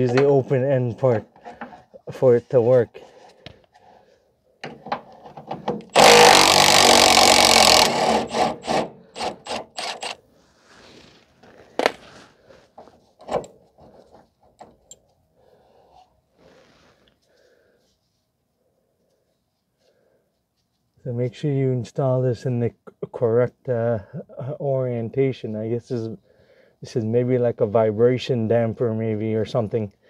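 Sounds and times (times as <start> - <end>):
sharp metallic clicks: 5.8 - 10.2
power tool running: 5.9 - 10.2.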